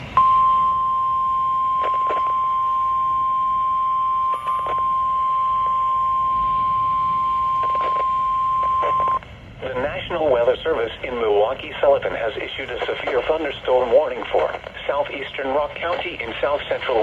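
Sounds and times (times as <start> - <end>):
faint static crackles: 0.0 - 17.0
weather radio alarm beep: 0.1 - 10.2.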